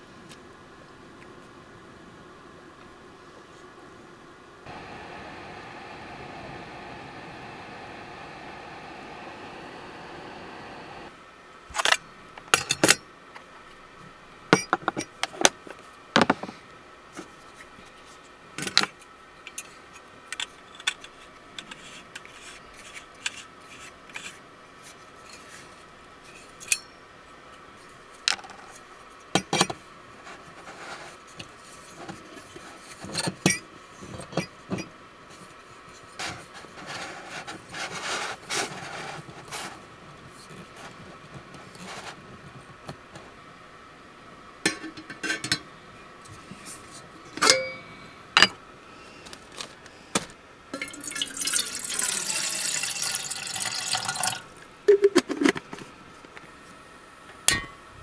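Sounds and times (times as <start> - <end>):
light rubbing or scraping: 35.8 - 42.4.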